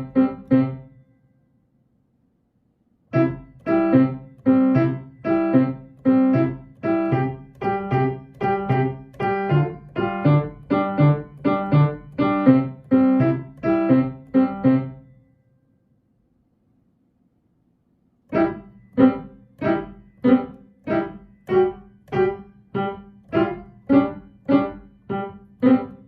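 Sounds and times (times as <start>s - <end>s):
solo piano march: 0.0s - 1.0s, 3.1s - 15.1s, 18.3s - 26.0s.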